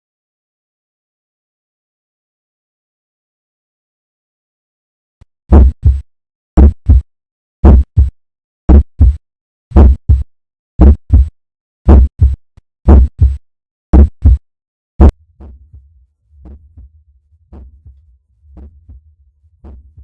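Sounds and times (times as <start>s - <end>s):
heartbeat lub-dub: 5.5s - 6.0s, 6.6s - 7.0s, 7.6s - 8.1s, 8.7s - 11.3s, 11.9s - 13.4s, 14.0s - 14.4s, 15.0s - 20.0s
faint low hum: 15.0s - 20.0s.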